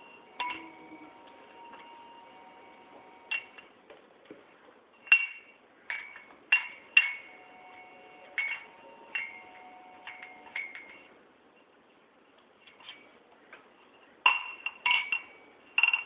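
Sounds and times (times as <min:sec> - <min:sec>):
glass tumbler clinking: 0:00.4 - 0:00.8, 0:03.3 - 0:03.7, 0:05.0 - 0:07.3, 0:08.3 - 0:11.0, 0:14.3 - 0:16.0.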